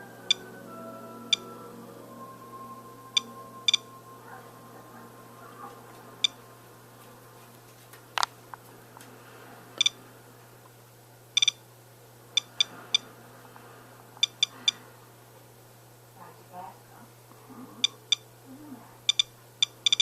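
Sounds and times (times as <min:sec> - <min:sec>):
geiger counter beeps: 0:03.0 - 0:04.2.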